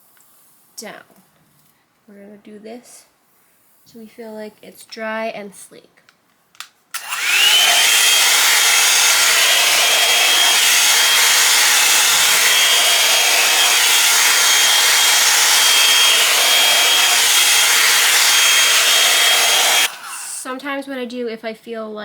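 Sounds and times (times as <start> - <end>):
blow-dryer brush motor whine: 7.0 - 20.5.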